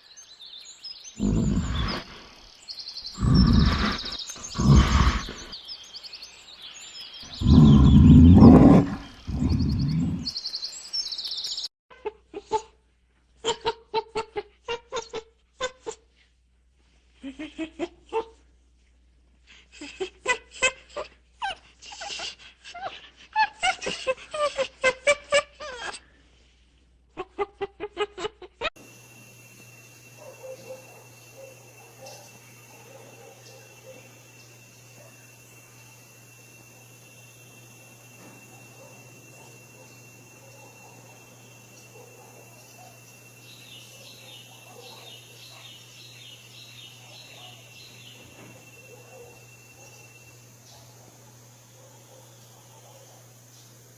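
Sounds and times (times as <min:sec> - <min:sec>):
animal short sharp calls: 0:01.2 - 0:02.4, 0:03.2 - 0:05.5, 0:07.4 - 0:10.3
steady low hum: 0:01.2 - 0:05.6, 0:07.3 - 0:10.4
low hum: 0:07.4 - 0:10.3
faint high whine: 0:28.8 - 0:53.9.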